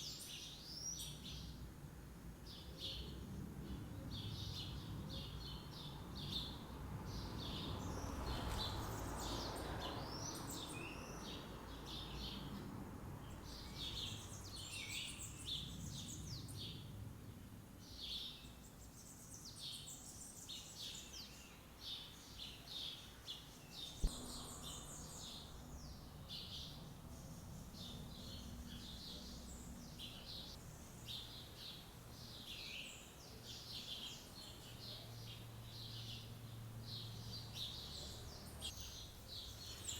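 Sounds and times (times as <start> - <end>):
birds chirping: 23.6 - 39.9
low background rumble: 24.0 - 30.6.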